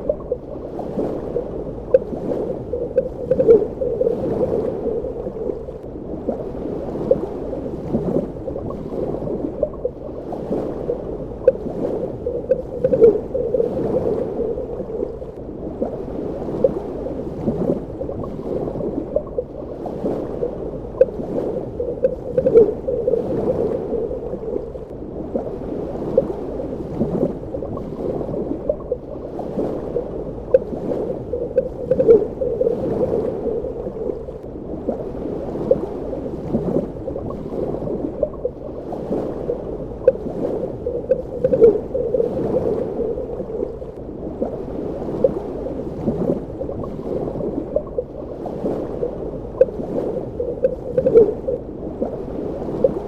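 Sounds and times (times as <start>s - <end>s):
bubbling and gurgling pops: 0.0s - 5.9s, 10.7s - 15.4s, 17.4s - 24.8s, 26.9s - 29.0s, 29.6s - 34.4s, 40.0s - 43.9s, 46.0s - 48.2s, 49.0s - 52.2s
muffled underwater water wash: 0.0s - 53.0s.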